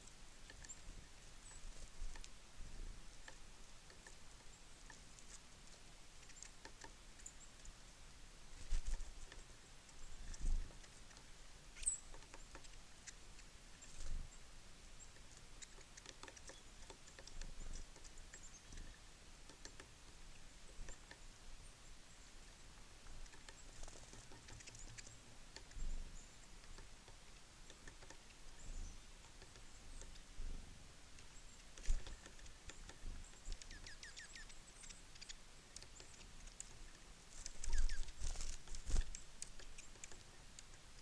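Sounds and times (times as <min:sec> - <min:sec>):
birds pecking and landing: 0:08.5 - 0:14.3, 0:15.1 - 0:19.9, 0:23.0 - 0:28.4, 0:31.2 - 0:41.0
high bird chirps: 0:31.4 - 0:36.2, 0:37.4 - 0:40.1.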